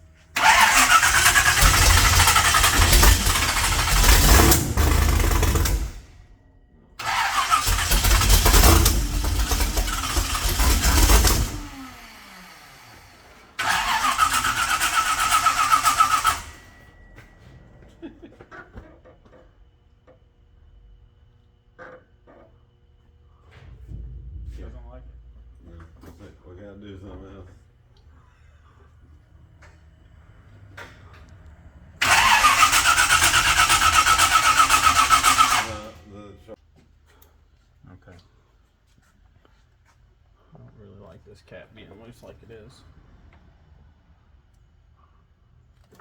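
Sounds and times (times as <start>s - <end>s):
engine cranking with starter whine: 0.3s - 20.2s, 28.2s - 36.2s.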